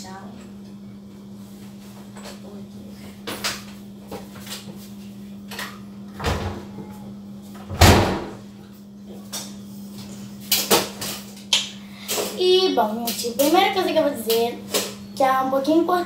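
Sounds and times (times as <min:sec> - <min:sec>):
door shutting thud: 0:07.6 - 0:08.4.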